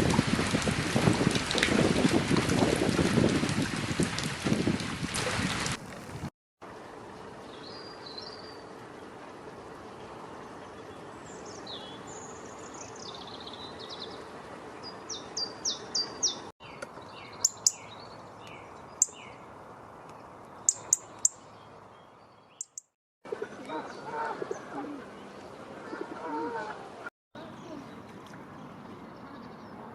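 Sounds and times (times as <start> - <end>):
small birds singing: 7.5 - 8.7, 10.8 - 23.0, 27.4 - 29.9.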